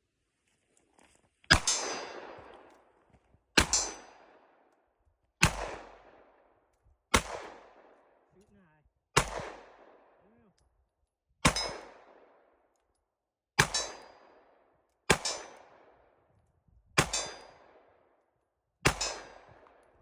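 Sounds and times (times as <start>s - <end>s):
pistol shots with echo: 1.5s - 2.9s, 3.6s - 4.6s, 5.4s - 6.5s, 7.1s - 8.3s, 9.2s - 10.2s, 11.4s - 12.6s, 13.6s - 16.1s, 17.0s - 18.0s, 18.8s - 19.9s.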